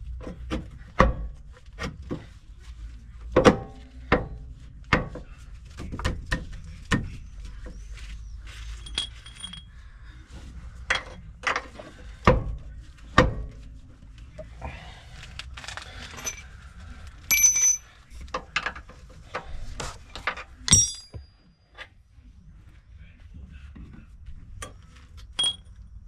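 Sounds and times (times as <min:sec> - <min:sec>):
metal parts clinking: 0:08.8 - 0:09.7, 0:15.7 - 0:16.4, 0:17.3 - 0:17.9, 0:20.7 - 0:21.3, 0:25.4 - 0:25.7.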